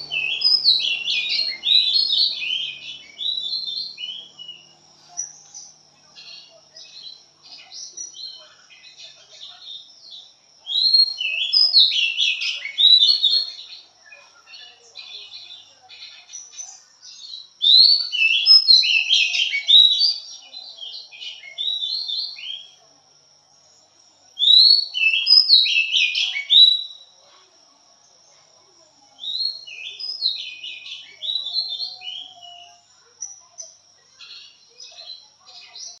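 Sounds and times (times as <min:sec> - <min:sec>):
magpie-robin singing whistled phrases: 0:00.0 - 0:09.0, 0:10.6 - 0:13.8, 0:15.4 - 0:22.8, 0:24.4 - 0:27.1, 0:29.2 - 0:35.2.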